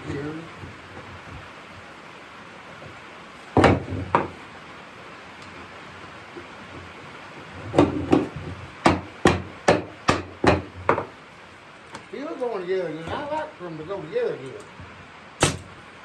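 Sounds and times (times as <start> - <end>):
wooden chair parts knocking: 3.6 - 4.3, 7.7 - 11.1.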